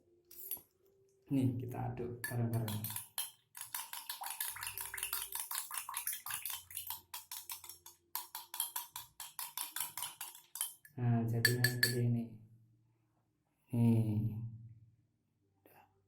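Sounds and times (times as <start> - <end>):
metal spoon clinking in glass: 2.2 - 5.5, 6.8 - 12.0.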